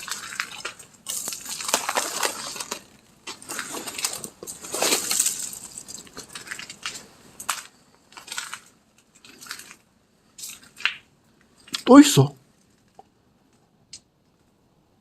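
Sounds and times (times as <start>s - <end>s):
crunching and crackling: 0.0s - 14.6s.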